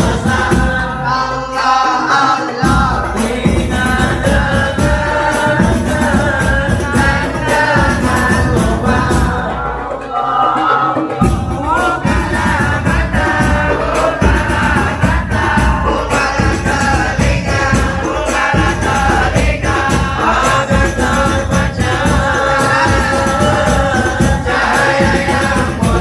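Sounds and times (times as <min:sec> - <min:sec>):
frame drums striking: 0:00.0 - 0:26.0
group of voices singing: 0:00.0 - 0:26.0.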